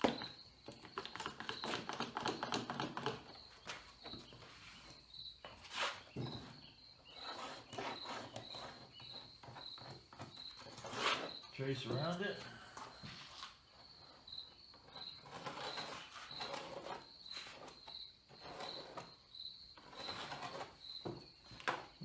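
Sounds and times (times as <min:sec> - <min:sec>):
cricket chirping: 0:00.0 - 0:22.0
plastic seat knocking and scraping: 0:06.1 - 0:06.6.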